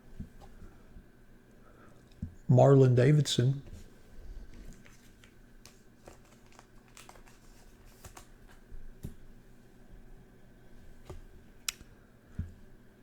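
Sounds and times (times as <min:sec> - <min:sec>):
faint high hum: 0:00.0 - 0:13.0
trading cards clicking and rustling: 0:04.7 - 0:09.2.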